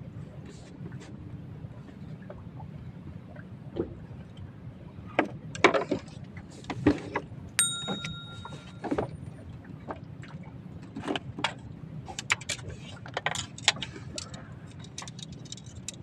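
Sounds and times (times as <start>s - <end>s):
small metal bell ding: 7.6s - 9.0s.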